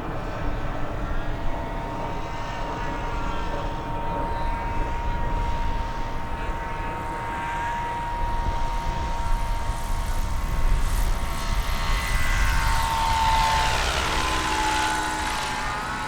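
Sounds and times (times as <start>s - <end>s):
model airplane motor whine: 0.0s - 16.0s.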